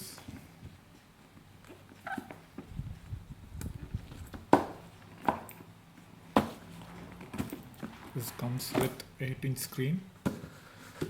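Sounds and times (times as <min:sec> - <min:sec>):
sharp knocks on box: 0:04.5 - 0:05.5.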